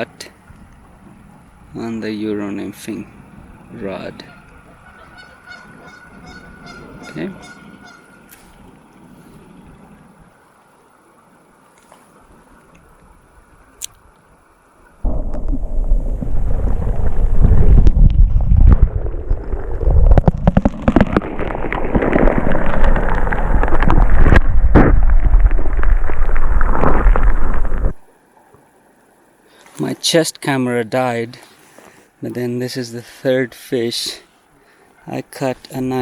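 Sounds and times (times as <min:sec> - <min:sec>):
low rumbling on microphone: 0:14.9 - 0:28.1.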